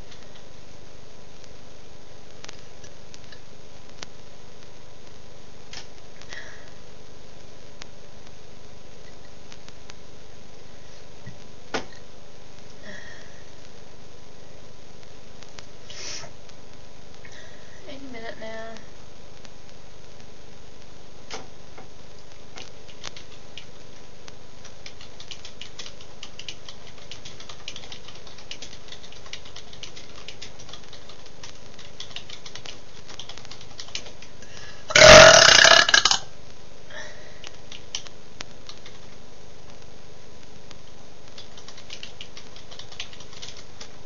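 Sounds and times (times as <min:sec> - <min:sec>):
faint irregular clicking: 0:21.3 - 0:34.6, 0:37.4 - 0:44.0
person burping loudly: 0:34.9 - 0:36.3.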